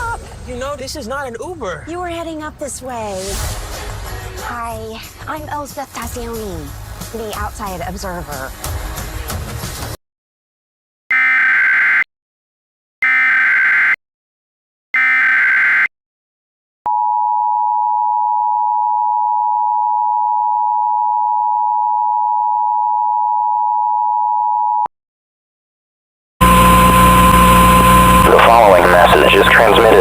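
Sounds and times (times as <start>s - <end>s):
data bursts: 11.1s - 12.0s, 13.0s - 14.0s, 15.0s - 15.9s, 26.4s - 30.0s
two-tone attention signal: 11.1s - 12.1s, 13.0s - 14.0s, 15.0s - 15.9s.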